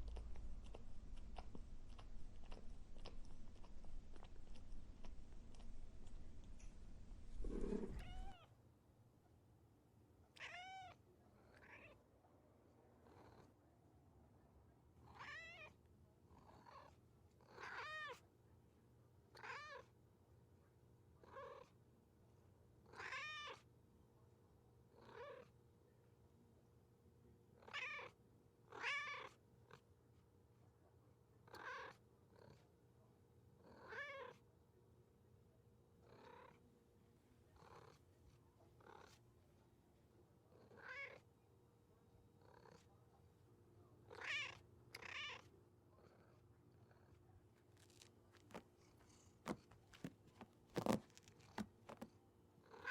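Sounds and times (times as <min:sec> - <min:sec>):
cat meowing: 0:07.4 - 0:08.4, 0:10.4 - 0:11.0, 0:44.1 - 0:45.4.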